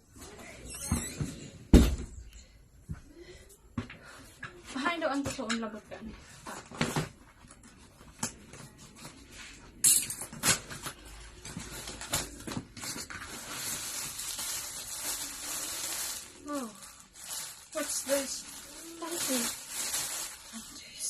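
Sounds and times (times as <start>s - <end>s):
packaging crinkling: 10.5s - 21.0s.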